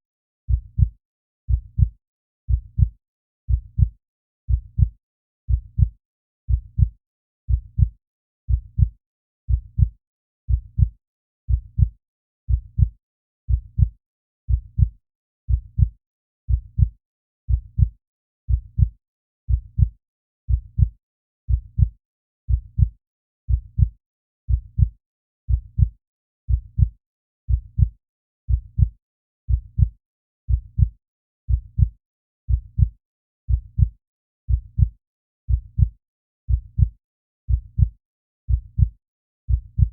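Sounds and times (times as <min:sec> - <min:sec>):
heartbeat double thumps: 0:00.5 - 0:00.9, 0:01.5 - 0:01.9, 0:02.5 - 0:02.9, 0:03.5 - 0:03.9, 0:04.5 - 0:04.9, 0:05.5 - 0:05.9, 0:06.5 - 0:06.9, 0:07.5 - 0:07.9, 0:08.5 - 0:08.9, 0:09.5 - 0:09.9, 0:10.5 - 0:10.9, 0:11.5 - 0:11.9, 0:12.5 - 0:12.9, 0:13.5 - 0:13.9, 0:14.5 - 0:14.9, 0:15.5 - 0:15.9, 0:16.5 - 0:16.9, 0:17.5 - 0:17.9, 0:18.5 - 0:18.9, 0:19.5 - 0:19.9, 0:20.5 - 0:20.9, 0:21.5 - 0:21.9, 0:22.5 - 0:22.9, 0:23.5 - 0:23.9, 0:24.5 - 0:24.9, 0:25.5 - 0:25.9, 0:26.5 - 0:26.9, 0:27.5 - 0:27.9, 0:28.5 - 0:28.9, 0:29.5 - 0:29.9, 0:30.5 - 0:30.9, 0:31.5 - 0:31.9, 0:32.5 - 0:32.9, 0:33.5 - 0:33.9, 0:34.5 - 0:34.9, 0:35.5 - 0:35.9, 0:36.5 - 0:36.9, 0:37.5 - 0:37.9, 0:38.5 - 0:38.9, 0:39.5 - 0:39.9.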